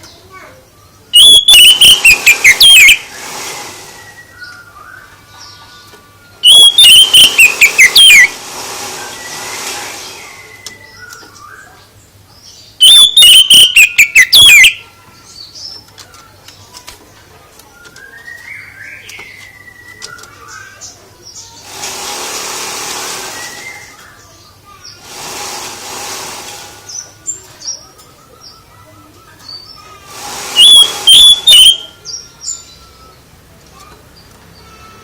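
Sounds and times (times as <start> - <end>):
songbird chirps and trills: 0.0 - 8.4, 9.0 - 21.8, 23.2 - 25.1, 26.8 - 35.0.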